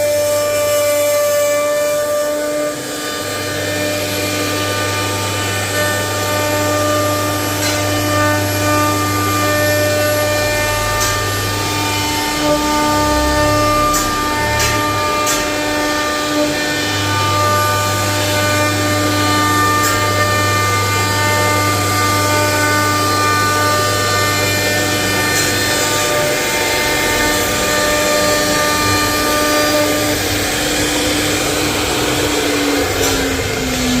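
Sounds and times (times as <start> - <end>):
router spindle whining: 0.0 - 34.0.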